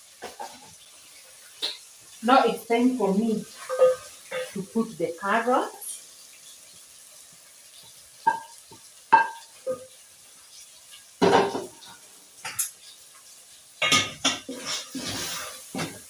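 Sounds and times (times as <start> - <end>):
metal utensil clinking on pot: 3.6 - 4.6, 13.8 - 14.9.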